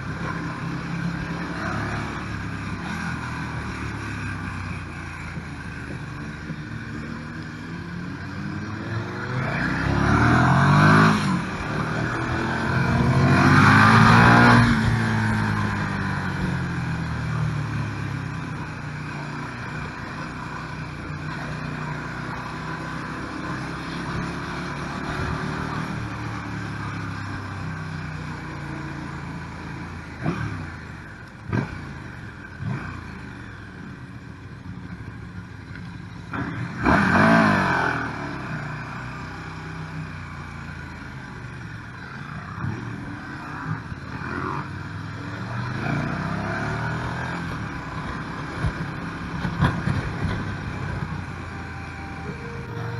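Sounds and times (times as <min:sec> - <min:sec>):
motorcycle engine revving: 0:00.0 - 0:20.5
engine throttle blips: 0:49.6 - 0:52.9.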